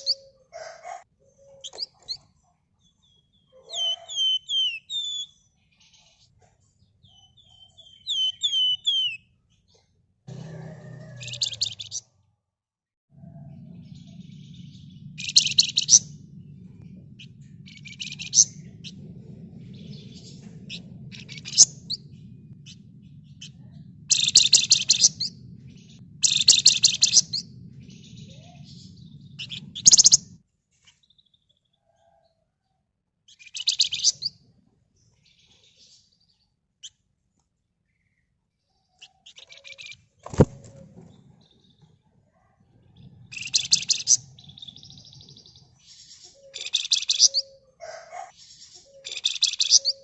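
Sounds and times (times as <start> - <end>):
songbird rattling song: 0.0 - 5.4, 7.0 - 9.3, 10.3 - 12.1, 13.2 - 31.4, 33.3 - 34.5, 39.0 - 42.0, 43.0 - 50.0
low steady hum: 13.2 - 30.4.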